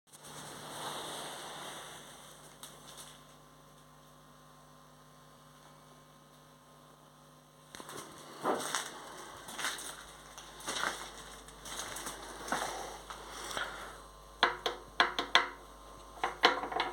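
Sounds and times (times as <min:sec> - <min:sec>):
lathe electric motor humming: 0:11.4 - 0:16.9.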